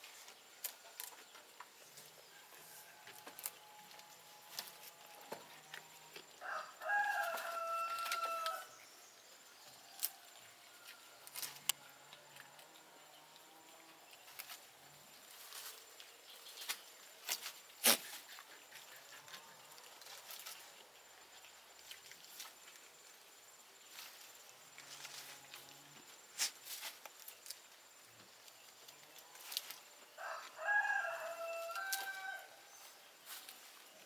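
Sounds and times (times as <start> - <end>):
rooster crowing: 6.4 - 8.7, 30.2 - 32.7.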